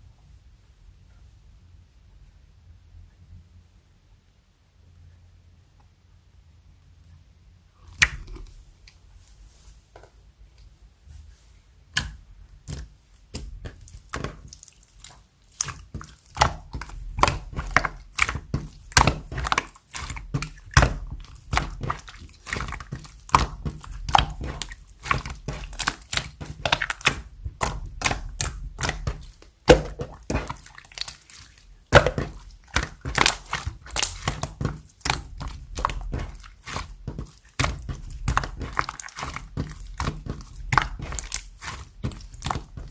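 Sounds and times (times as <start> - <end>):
slime popping and clicking: 8.0 - 8.5, 12.0 - 42.9.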